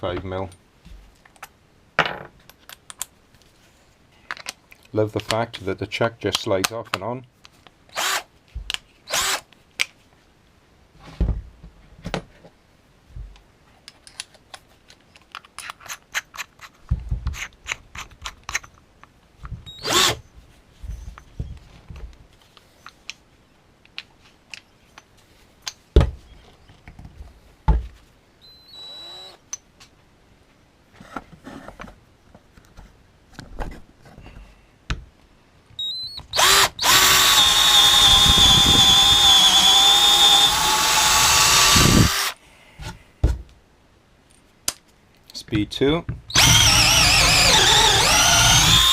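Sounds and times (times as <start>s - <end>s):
drill motor running: 19.7s - 20.2s, 28.7s - 29.4s, 35.8s - 42.4s, 46.3s - 48.9s
cordless drill parts clicking: 35.8s - 42.4s, 46.3s - 48.9s.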